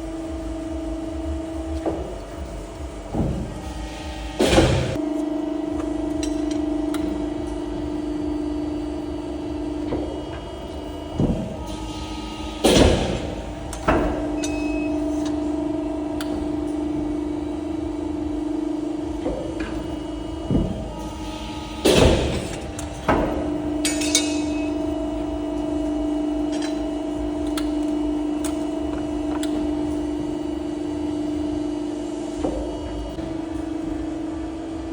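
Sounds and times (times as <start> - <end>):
machine humming drone: 0.0 - 34.9
loud metal clanks: 20.5 - 24.9.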